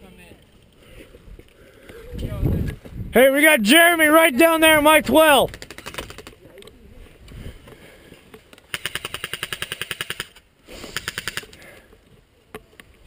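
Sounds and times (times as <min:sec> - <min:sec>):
airsoft gun firing: 0:08.7 - 0:11.5.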